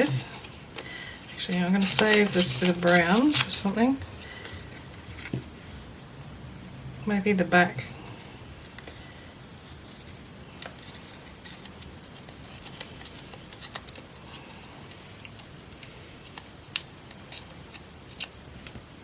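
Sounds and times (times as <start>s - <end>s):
paper tearing and crackling: 1.3s - 3.6s, 10.5s - 15.7s.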